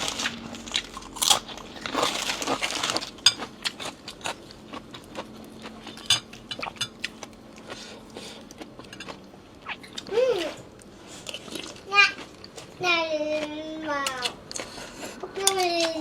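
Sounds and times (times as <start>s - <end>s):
chewing: 0.0s - 12.8s, 13.4s - 16.0s
utensils clinking against bowl: 5.9s - 7.0s, 8.8s - 9.2s.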